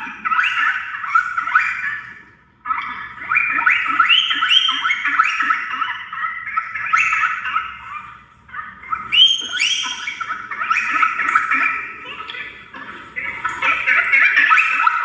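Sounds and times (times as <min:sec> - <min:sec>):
dolphins whistling underwater: 0:02.8 - 0:08.0, 0:08.6 - 0:12.0.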